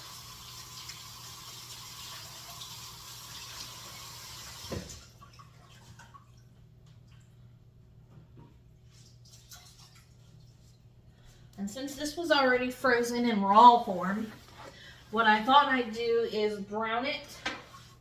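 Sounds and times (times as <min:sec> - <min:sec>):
kitchen faucet running: 0:00.0 - 0:05.0.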